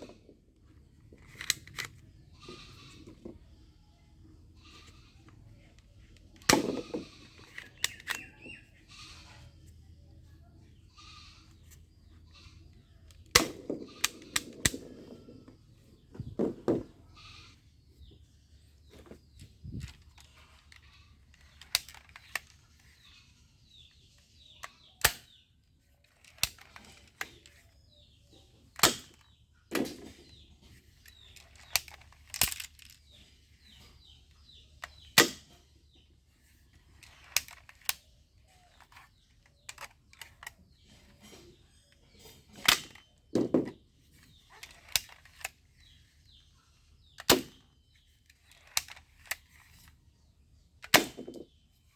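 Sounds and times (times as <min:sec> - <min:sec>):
plastic toy gun clicks: 0:01.2 - 0:02.2, 0:04.7 - 0:08.7, 0:13.0 - 0:15.0, 0:19.8 - 0:23.1, 0:23.8 - 0:25.4, 0:26.1 - 0:27.6, 0:28.7 - 0:33.0, 0:33.6 - 0:36.0, 0:36.8 - 0:40.8, 0:42.2 - 0:43.5, 0:44.2 - 0:46.4, 0:47.0 - 0:47.6, 0:48.2 - 0:50.0, 0:50.8 - 0:51.4
short plastic rattle: 0:26.0 - 0:27.8, 0:28.6 - 0:46.4.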